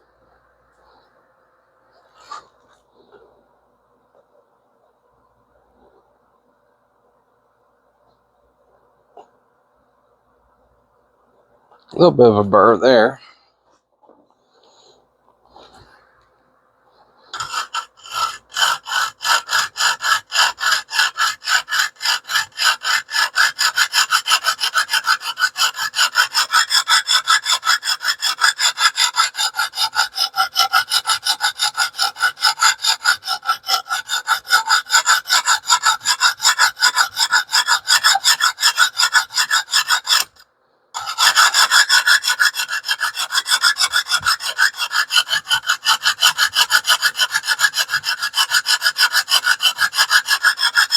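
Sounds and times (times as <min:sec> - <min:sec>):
sharpening stone rasping on blade: 0:17.3 - 0:40.4, 0:41.0 - 0:50.9.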